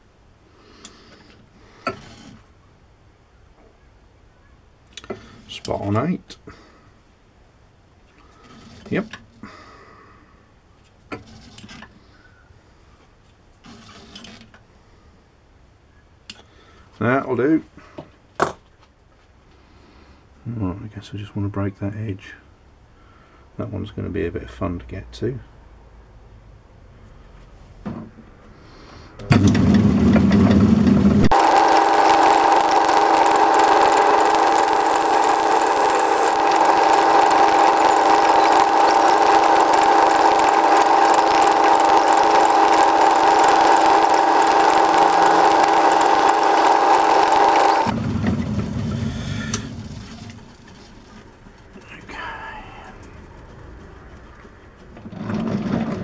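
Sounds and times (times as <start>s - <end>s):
power tool whining on steel: 31.2s - 48.0s.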